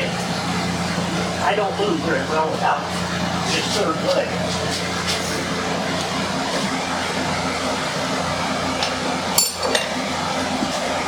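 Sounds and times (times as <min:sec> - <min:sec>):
shop fans humming: 0:00.0 - 0:11.0
light metallic clinks: 0:09.4 - 0:10.0.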